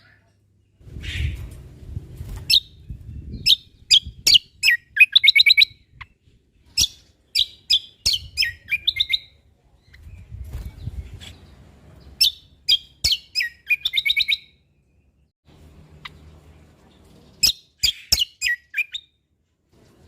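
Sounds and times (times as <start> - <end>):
bird chirps and trills: 0.0 - 19.2
low rumble: 0.8 - 4.2.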